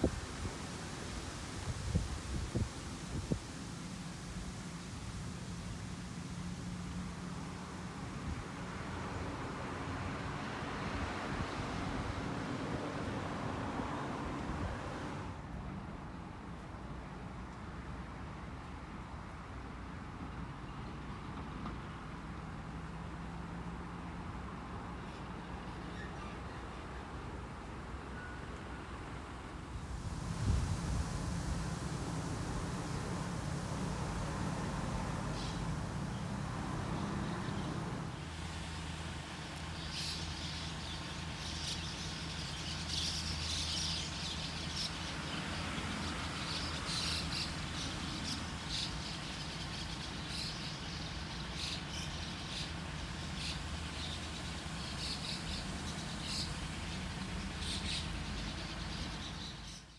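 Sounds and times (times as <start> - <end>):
steady low rumble: 29.8 - 38.2
small birds chirping: 39.6 - 59.9.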